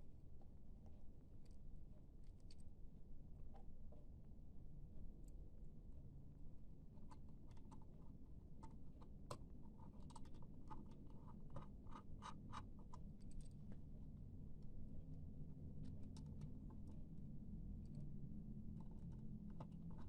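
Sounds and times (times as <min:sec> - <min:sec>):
low hum: 0:13.2 - 0:20.0.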